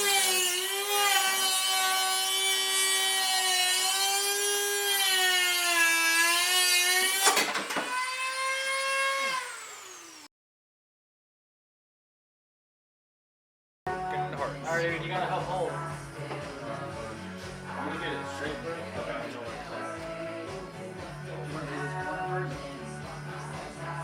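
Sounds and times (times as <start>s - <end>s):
harsh grinding burst: 0.0s - 10.3s
power tool whine: 0.0s - 10.3s.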